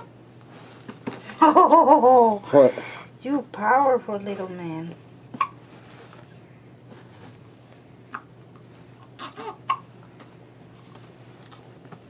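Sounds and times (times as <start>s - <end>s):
baby hiccuping: 5.4s - 5.6s, 9.2s - 9.9s.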